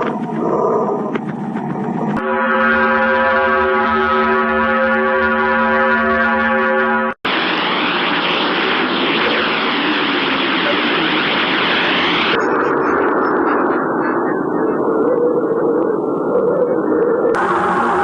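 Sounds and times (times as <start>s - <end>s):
loud hiss: 7.3s - 12.4s
low rushing noise: 7.3s - 18.0s.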